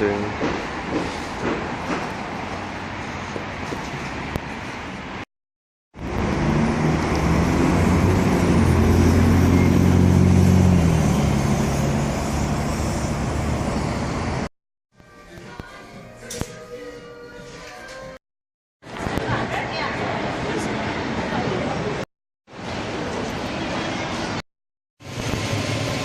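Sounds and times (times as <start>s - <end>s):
road traffic noise: 0.0s - 5.3s, 5.9s - 14.5s, 18.8s - 24.4s, 25.0s - 26.0s
heavy vehicle engine droning: 6.0s - 14.5s.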